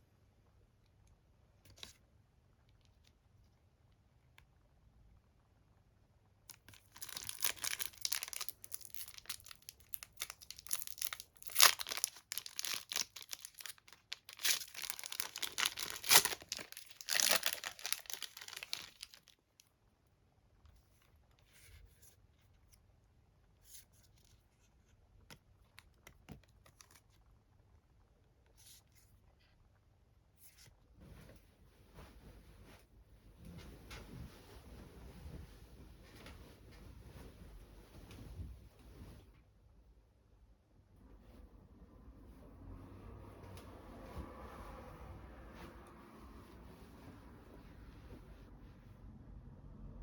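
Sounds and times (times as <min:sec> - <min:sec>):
plastic wrapper tearing and crinkling: 0:06.5 - 0:19.4
faint rustles and clicks: 0:06.5 - 0:19.8, 0:20.5 - 0:39.6, 0:41.0 - 0:49.0.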